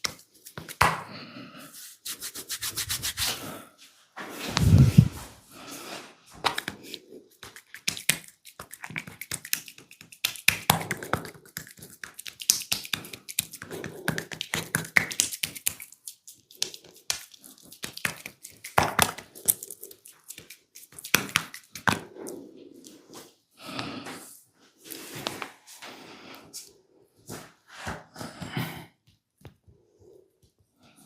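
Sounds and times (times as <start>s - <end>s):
hands tapping and rubbing skin: 0.0s - 1.1s, 6.4s - 22.2s.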